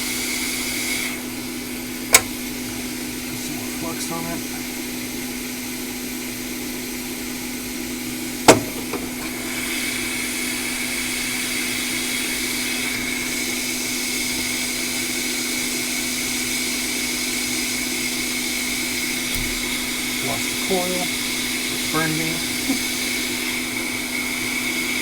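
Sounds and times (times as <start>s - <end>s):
hot air station blowing: 0.0s - 25.0s
sharp click: 2.1s - 2.4s.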